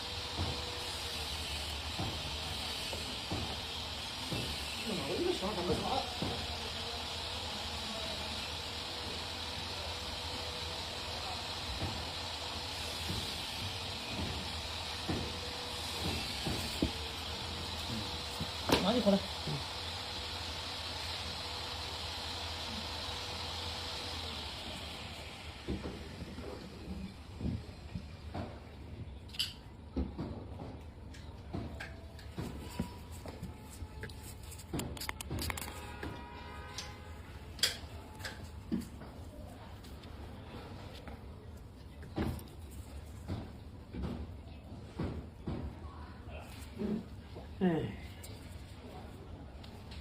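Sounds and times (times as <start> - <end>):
steady hiss: 0.0 - 26.9
small objects clicking and tapping: 34.0 - 36.9.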